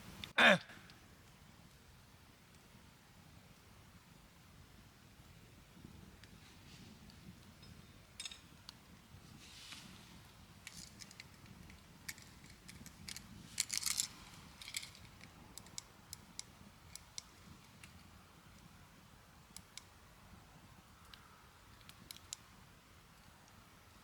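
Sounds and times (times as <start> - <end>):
light clicks and metallic clinks: 7.5 - 8.7, 10.6 - 18.7.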